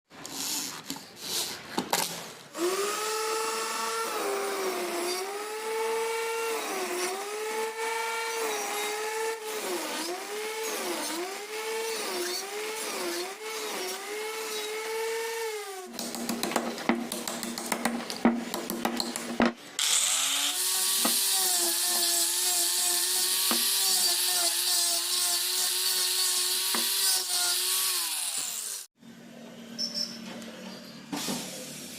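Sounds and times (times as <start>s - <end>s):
power tool motor whine: 2.6s - 15.9s, 19.8s - 28.9s.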